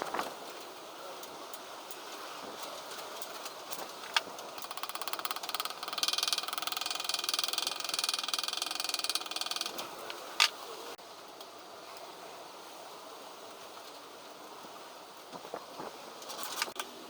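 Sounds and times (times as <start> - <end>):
rapid even ticking: 4.6 - 10.3.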